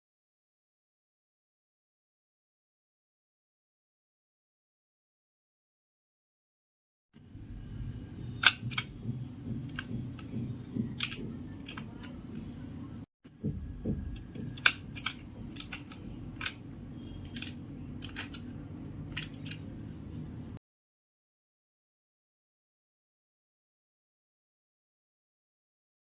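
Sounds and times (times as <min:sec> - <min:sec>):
low steady hum: 0:07.2 - 0:20.6
sharp clicks and taps: 0:08.4 - 0:12.5, 0:13.4 - 0:16.6.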